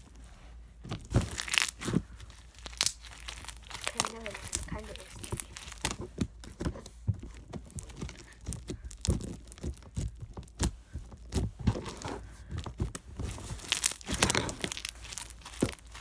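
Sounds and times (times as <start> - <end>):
slime crackling and popping: 1.1 - 6.3, 7.5 - 11.5, 12.8 - 16.0.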